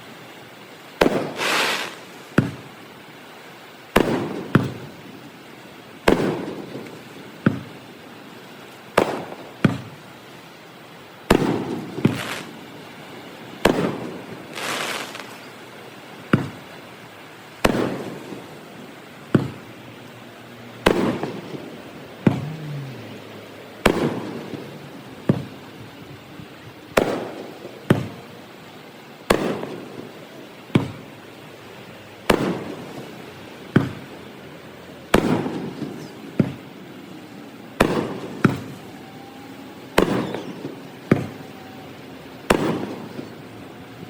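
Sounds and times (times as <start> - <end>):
firework shells bursting: 0.9 - 2.9, 3.9 - 7.8, 8.4 - 19.8, 20.8 - 22.5, 23.8 - 31.5, 32.2 - 34.2, 35.0 - 43.5.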